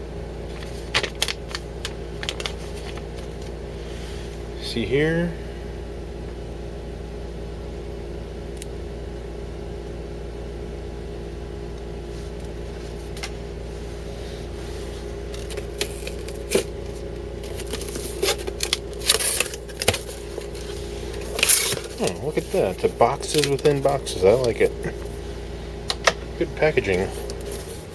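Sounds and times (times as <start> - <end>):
steady background hum: 0.0 - 27.9
cardboard and paper rustling: 0.5 - 4.1, 12.2 - 25.2, 26.5 - 27.9.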